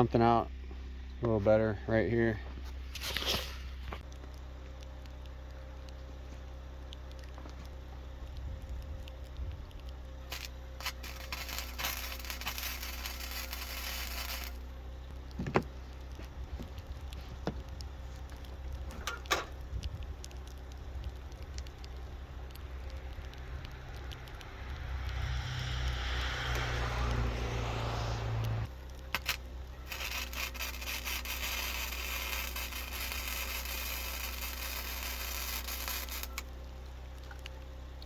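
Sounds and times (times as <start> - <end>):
steady low hum: 0.0 - 38.0
welder arc crackling: 9.0 - 37.6.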